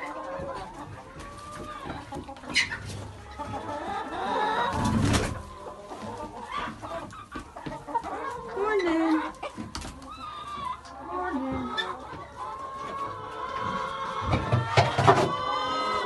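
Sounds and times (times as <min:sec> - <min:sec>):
hens clucking: 0:00.0 - 0:16.0.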